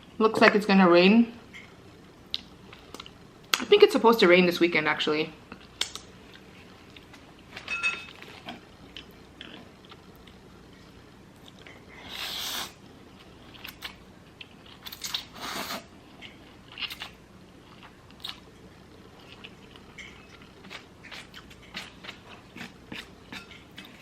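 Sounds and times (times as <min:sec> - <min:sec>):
crunchy chewing: 0:11.4 - 0:24.0.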